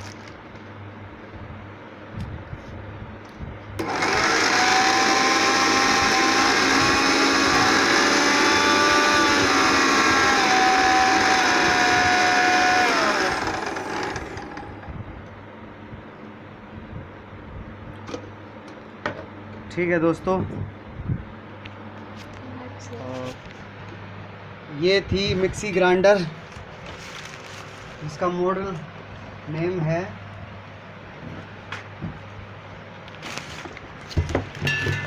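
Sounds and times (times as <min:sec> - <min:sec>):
mixer grinder motor whining: 0:03.8 - 0:15.0.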